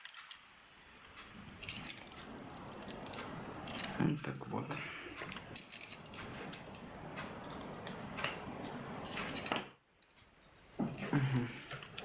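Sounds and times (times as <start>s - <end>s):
metal tool parts clicking: 9.0s - 12.0s.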